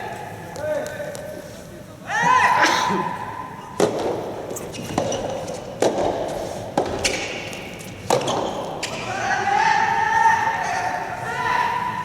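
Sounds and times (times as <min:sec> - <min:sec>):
tennis ball struck by rackets: 0:03.8 - 0:08.9.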